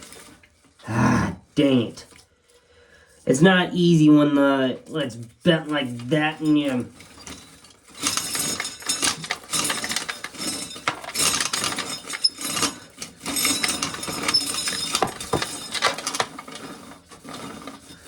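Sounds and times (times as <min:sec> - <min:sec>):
corn sheller stripping kernels: 0:00.0 - 0:00.8, 0:03.3 - 0:18.0
kernels clattering down: 0:06.2 - 0:18.0.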